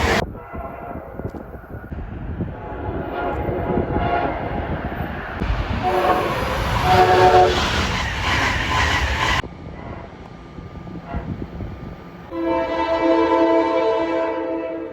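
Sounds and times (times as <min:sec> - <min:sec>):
train horn blasts: 0:00.0 - 0:01.8, 0:02.4 - 0:04.8, 0:05.8 - 0:07.7, 0:12.3 - 0:14.9
train passing close by: 0:00.0 - 0:14.9.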